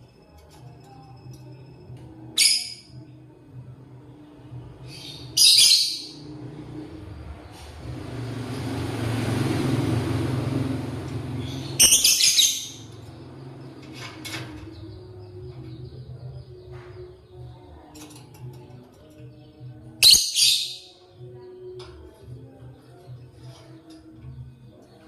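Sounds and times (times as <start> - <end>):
lovebirds shrill chirping: 5.0 - 6.2, 11.4 - 12.9, 20.0 - 20.9.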